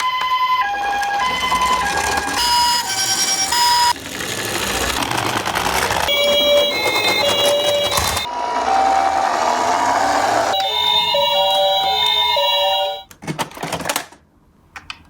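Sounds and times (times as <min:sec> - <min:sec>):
two-tone ambulance sirens: 0:00.0 - 0:04.0, 0:06.0 - 0:13.1.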